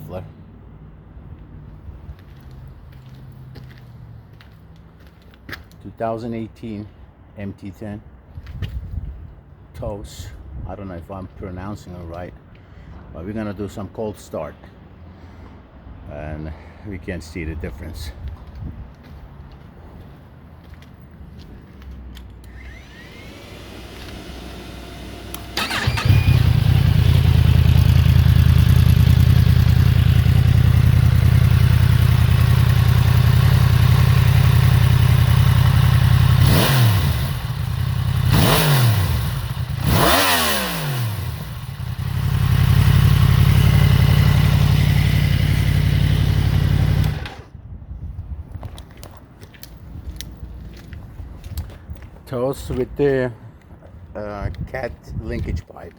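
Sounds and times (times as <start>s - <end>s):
motorcycle engine starting and idling: 22.2s - 47.6s
motorcycle throttle blips: 25.1s - 47.5s.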